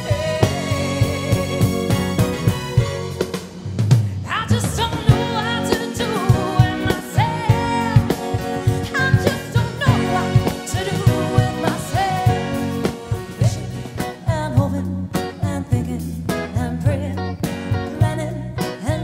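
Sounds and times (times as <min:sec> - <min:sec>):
person singing: 0:00.0 - 0:02.2, 0:04.3 - 0:19.0
sixties-style band music: 0:00.0 - 0:19.0.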